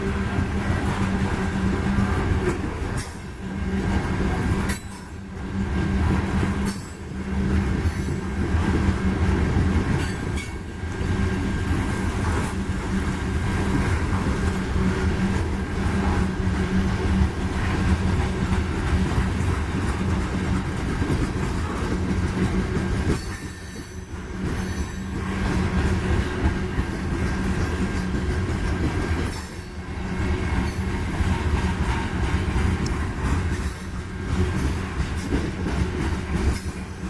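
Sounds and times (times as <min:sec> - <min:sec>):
train wheels rumbling on rails: 0:00.0 - 0:37.0.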